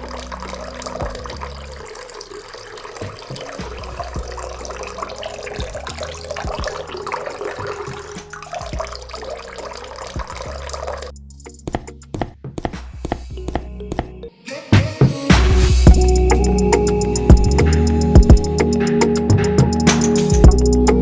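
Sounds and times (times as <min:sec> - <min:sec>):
water running and splashing: 0:00.0 - 0:11.1.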